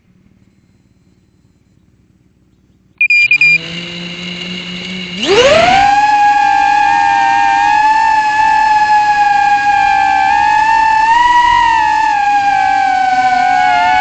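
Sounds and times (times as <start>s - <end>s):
short high beeps: 3.0s - 3.7s
drone motors whining: 3.0s - 14.0s.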